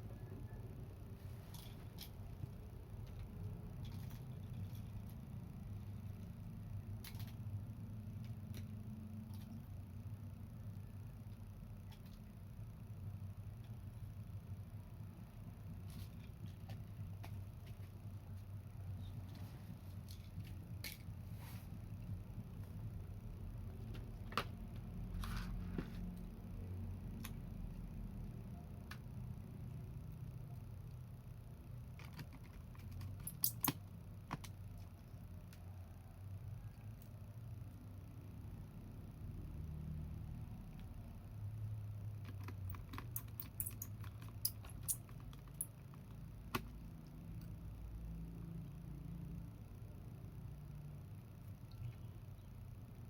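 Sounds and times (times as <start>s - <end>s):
low steady hum: 0.0s - 53.0s
laptop parts and tools clicking: 1.5s - 9.8s, 11.2s - 12.4s, 27.0s - 28.0s, 31.7s - 35.7s, 42.0s - 47.6s.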